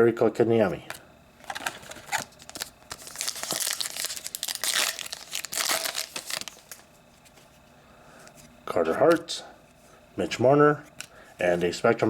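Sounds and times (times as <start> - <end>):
wrapper tearing and crinkling: 1.4 - 6.8.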